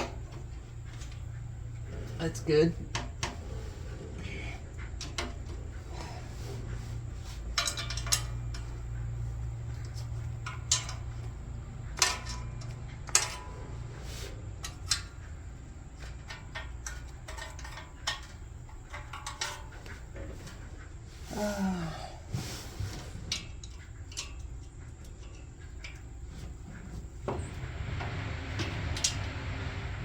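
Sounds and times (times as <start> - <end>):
steady low hum: 0.0 - 30.0
wrenches clinking on metal bolts: 7.4 - 9.1, 9.7 - 13.8, 15.9 - 20.0.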